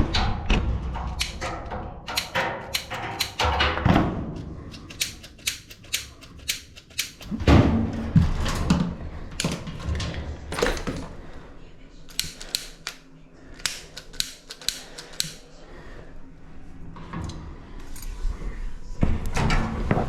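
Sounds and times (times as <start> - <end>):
tools clicking and knocking: 1.0 - 7.4, 9.4 - 11.1, 12.1 - 15.6.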